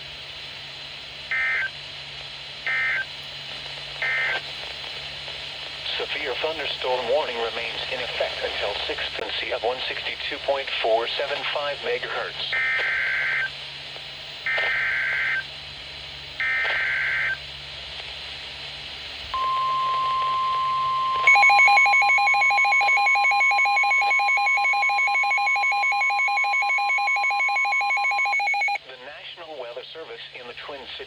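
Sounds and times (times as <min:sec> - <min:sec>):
rapidly pulsing electronic alarm: 0:01.3 - 0:01.7, 0:02.7 - 0:03.1, 0:04.0 - 0:04.4, 0:12.6 - 0:13.5, 0:14.4 - 0:15.5, 0:16.4 - 0:17.4, 0:19.4 - 0:28.8
steady alarm tone: 0:19.4 - 0:28.8.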